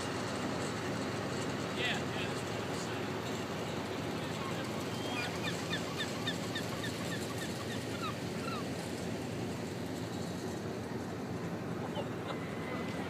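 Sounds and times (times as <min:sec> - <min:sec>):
wind: 0:00.0 - 0:13.0
birds chirping: 0:03.2 - 0:08.8.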